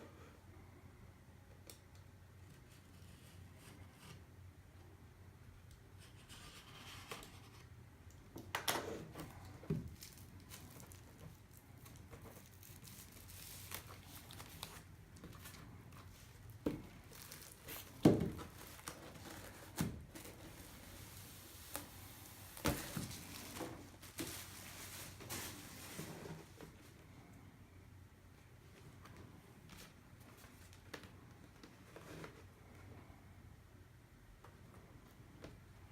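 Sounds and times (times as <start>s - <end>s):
packaging tearing and crinkling: 9.9s - 14.9s, 17.0s - 25.9s.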